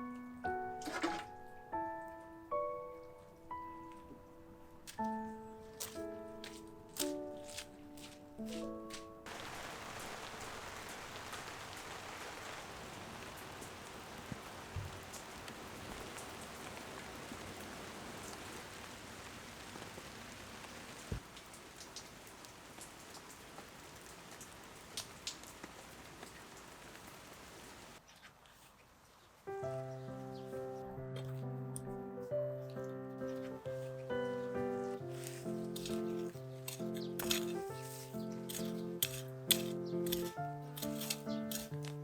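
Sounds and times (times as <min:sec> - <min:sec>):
steady rain hiss: 0:09.3 - 0:28.0.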